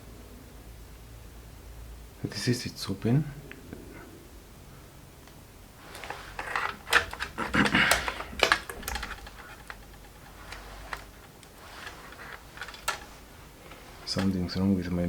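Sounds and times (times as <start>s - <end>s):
small clicks and taps: 5.9s - 14.4s.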